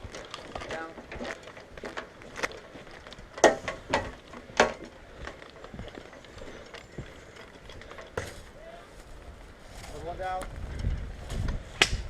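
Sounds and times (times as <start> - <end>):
airsoft gun shots: 8.2 - 8.6.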